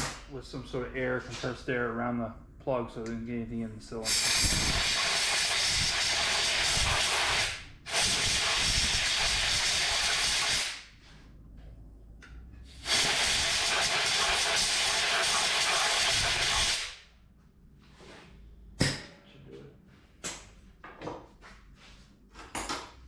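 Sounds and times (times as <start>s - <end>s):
compressed air hissing: 4.0s - 10.9s, 12.7s - 17.0s.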